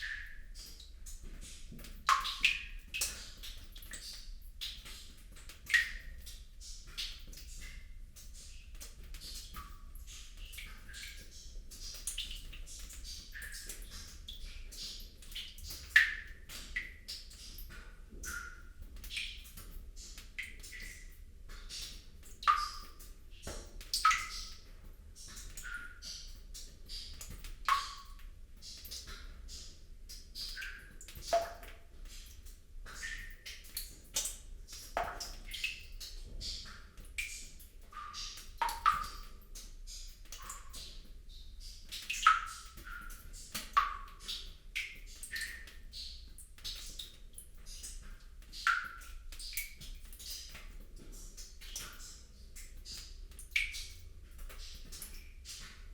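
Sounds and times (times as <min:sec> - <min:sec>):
water droplets plinking into water: 0:01.8 - 0:06.3, 0:22.4 - 0:24.6, 0:25.3 - 0:29.3, 0:30.1 - 0:41.0, 0:41.9 - 0:50.8.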